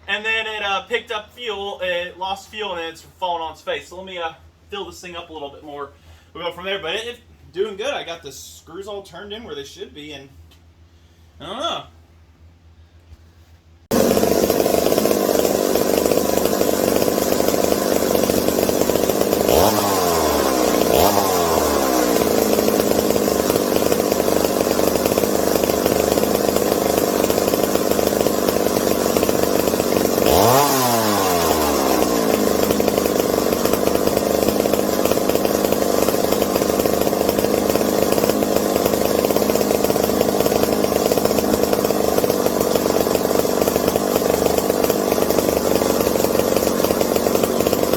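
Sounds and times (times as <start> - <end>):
chainsaw engine revving: 13.9 - 47.9.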